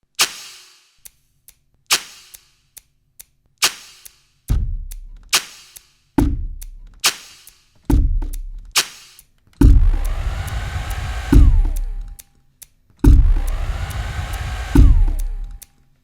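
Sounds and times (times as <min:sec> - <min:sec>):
snare drum cracks: 0:00.1 - 0:01.1, 0:01.9 - 0:02.6, 0:03.6 - 0:04.6, 0:05.2 - 0:12.2
deep booming kick drum: 0:04.5 - 0:05.2, 0:06.2 - 0:06.9, 0:07.9 - 0:08.7, 0:09.6 - 0:12.2, 0:13.0 - 0:15.6.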